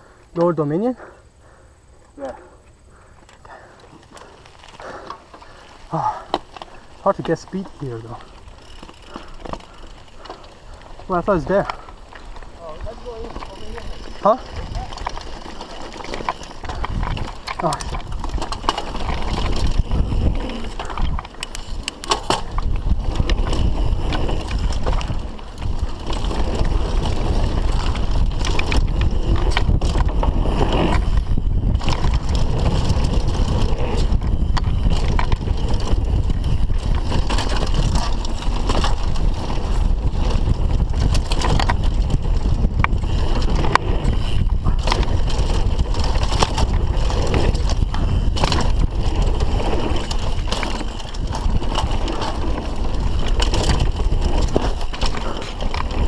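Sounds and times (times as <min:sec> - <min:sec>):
bike rattling with clicks and knocks: 0:00.0 - 0:56.0
tyres rumbling over dirt: 0:03.4 - 0:56.0
wind rushing over microphone: 0:11.1 - 0:56.0.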